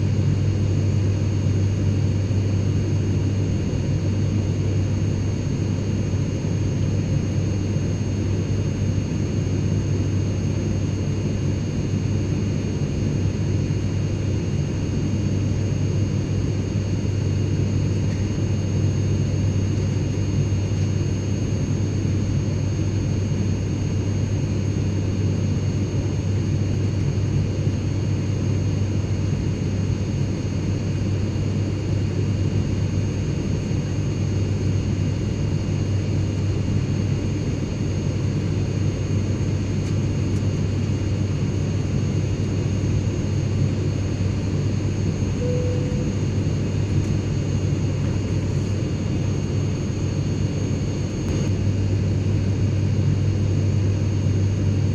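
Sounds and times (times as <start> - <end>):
faint high whines: 44.8 - 49.2.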